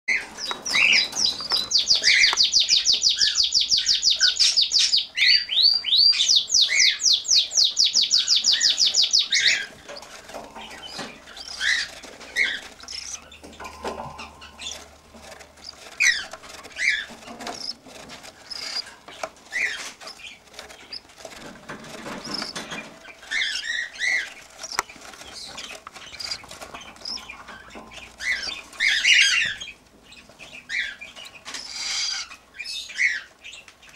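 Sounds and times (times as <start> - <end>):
cockatiel chick chirping: 0.1 - 14.8, 15.6 - 17.8, 18.4 - 21.0, 22.0 - 33.9.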